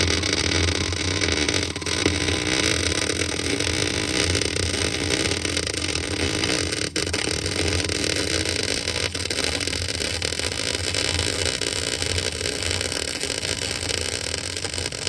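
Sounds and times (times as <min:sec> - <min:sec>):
low hum: 0:00.0 - 0:05.2
welding arc crackling: 0:00.0 - 0:15.0.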